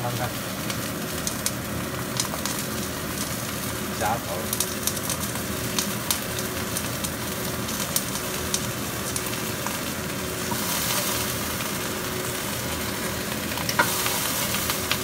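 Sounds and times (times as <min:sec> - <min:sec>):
meat sizzling in oil: 0:00.0 - 0:15.0.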